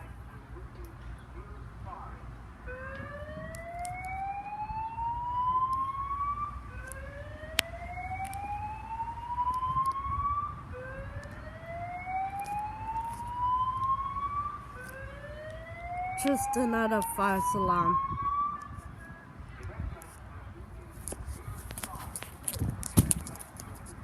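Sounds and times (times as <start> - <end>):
fire alarm whooping: 2.7 - 18.9.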